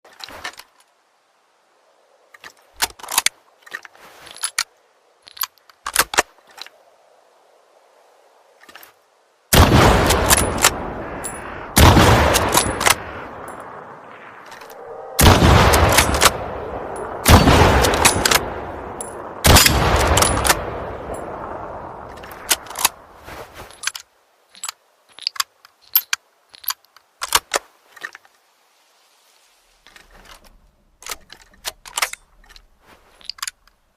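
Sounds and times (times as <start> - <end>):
rifle shots with echo: 9.5 - 13.5, 15.2 - 22.7
rifle action metallic clicks: 17.0 - 21.3, 22.1 - 23.0, 29.9 - 33.8.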